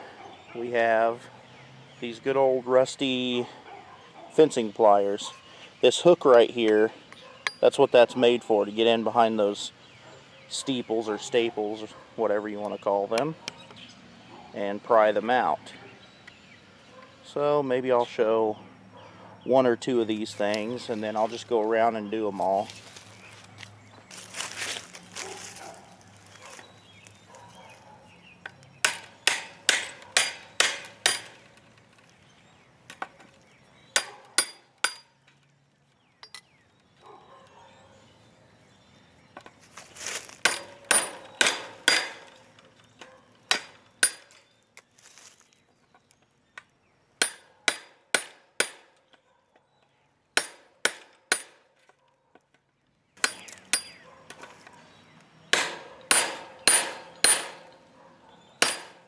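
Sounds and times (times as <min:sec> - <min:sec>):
hammer striking metal pliers: 0:28.8 - 0:31.4, 0:40.4 - 0:42.3, 0:53.2 - 0:54.0, 0:55.5 - 0:57.7, 0:58.6 - 0:59.0.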